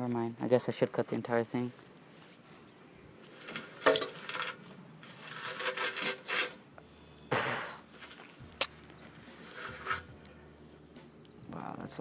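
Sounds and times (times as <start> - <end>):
rough rubbing and scraping: 3.2 - 6.6, 9.1 - 10.3.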